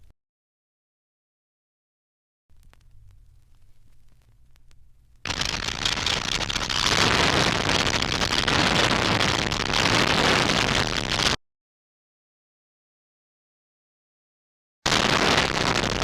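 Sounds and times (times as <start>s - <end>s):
faint low record hum: 2.5s - 7.7s.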